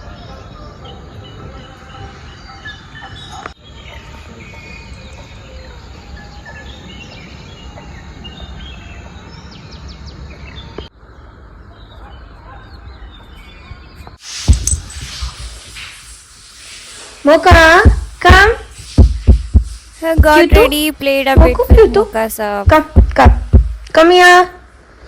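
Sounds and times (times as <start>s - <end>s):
birds chirping and whistling: 0.0s - 12.1s, 19.0s - 22.1s
low background rumble: 17.5s - 24.4s.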